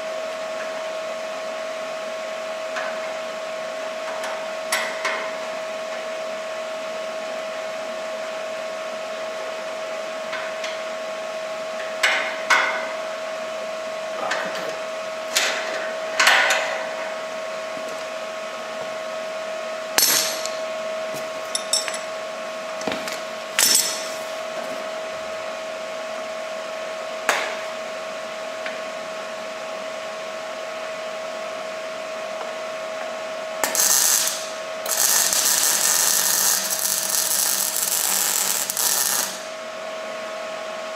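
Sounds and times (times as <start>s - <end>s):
steady high hum: 0.0s - 40.9s
steel parts knocking and clinking: 21.5s - 22.1s
power tool running: 33.6s - 39.5s.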